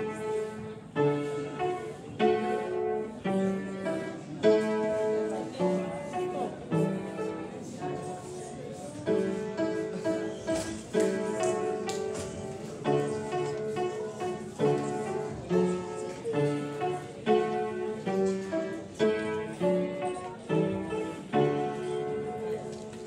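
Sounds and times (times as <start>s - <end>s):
piano music: 0.0s - 23.0s.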